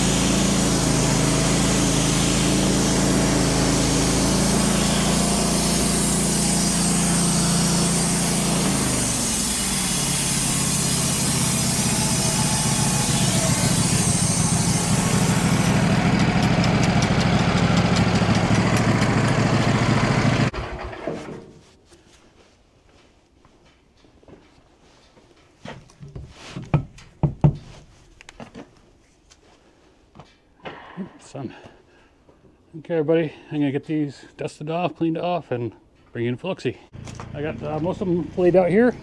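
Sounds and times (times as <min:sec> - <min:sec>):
bandsaw mill running: 0:00.0 - 0:21.2, 0:37.0 - 0:39.0.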